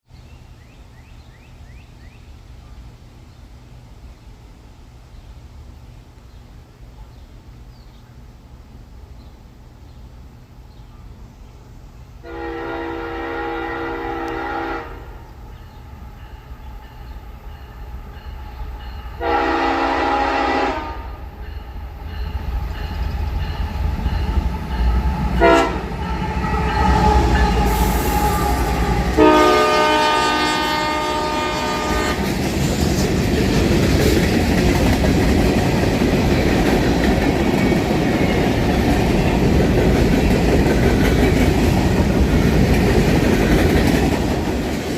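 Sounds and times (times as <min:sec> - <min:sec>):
locomotive air horn blasts: 0:12.2 - 0:15.2, 0:19.2 - 0:21.2, 0:25.4 - 0:32.3
diesel locomotive rumble: 0:12.3 - 0:44.9
train wheels clicking on rail joints: 0:31.8 - 0:44.9.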